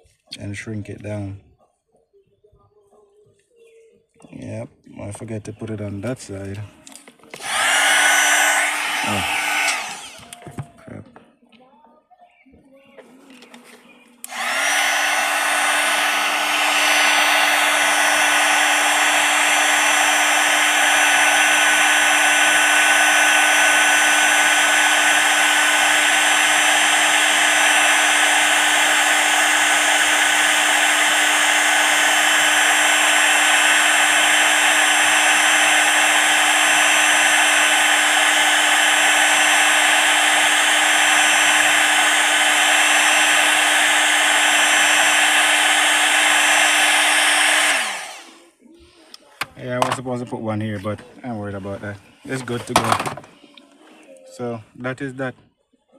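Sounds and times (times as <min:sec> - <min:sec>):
heat gun running: 0:05.6 - 0:10.7, 0:14.2 - 0:48.5, 0:51.3 - 0:53.4.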